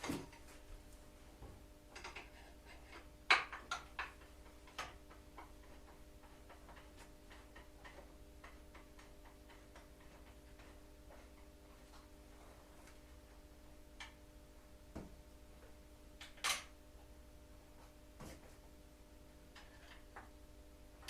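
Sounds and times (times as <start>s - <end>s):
faint steady hum: 0.0s - 21.0s.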